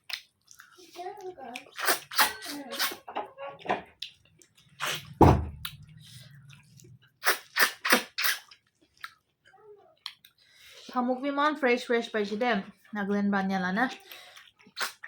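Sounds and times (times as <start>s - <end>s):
mouth smacks and crunching chews: 0.0s - 2.2s, 3.9s - 10.7s, 14.0s - 15.0s
heavy thump: 5.2s - 5.6s.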